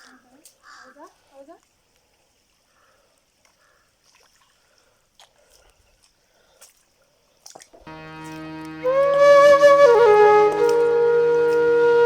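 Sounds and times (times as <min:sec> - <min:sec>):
water trickling and dripping: 0:00.3 - 0:12.0
background music with sustained tones: 0:07.9 - 0:12.0.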